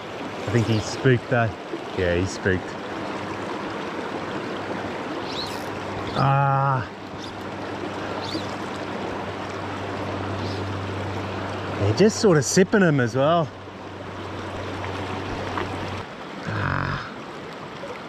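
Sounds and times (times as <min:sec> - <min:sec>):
river water rushing: 0:00.0 - 0:18.0
man exclaiming: 0:16.5 - 0:17.1.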